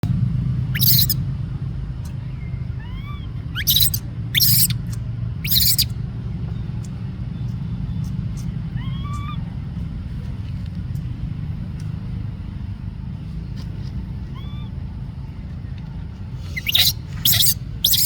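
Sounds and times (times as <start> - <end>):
steady low rumble: 0.0 - 18.0
baby monkey screeches: 0.7 - 1.2, 2.7 - 5.9, 8.4 - 9.5, 14.3 - 14.7, 16.4 - 18.0
monkey rising squeak: 0.8 - 1.2, 2.8 - 4.8, 5.4 - 5.9, 16.4 - 18.0.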